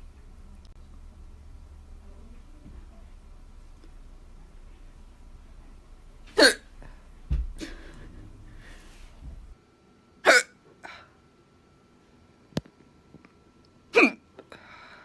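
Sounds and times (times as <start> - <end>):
person hiccuping: 6.4 - 6.7, 10.2 - 10.6, 14.0 - 14.2.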